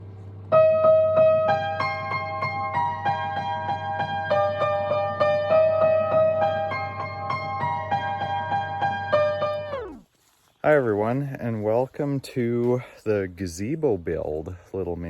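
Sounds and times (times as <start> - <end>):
keyboard tune repeated notes: 0.6 - 10.0.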